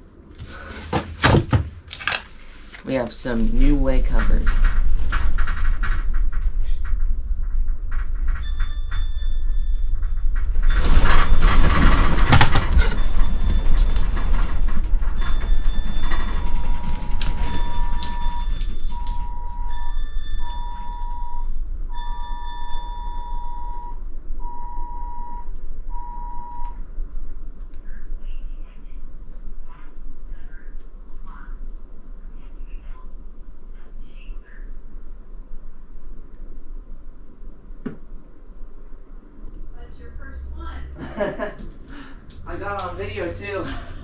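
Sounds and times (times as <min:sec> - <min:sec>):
low earthquake rumble: 0:03.1 - 0:44.0
electronic alarm beeping: 0:12.8 - 0:26.8.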